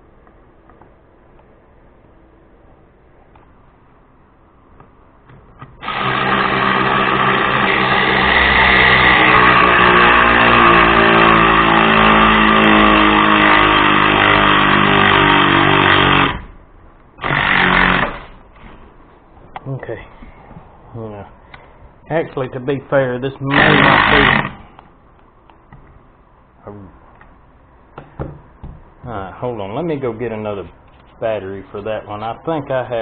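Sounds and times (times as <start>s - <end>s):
electric ratchet motor running: 5.8s - 16.5s, 17.2s - 18.4s, 23.5s - 24.6s.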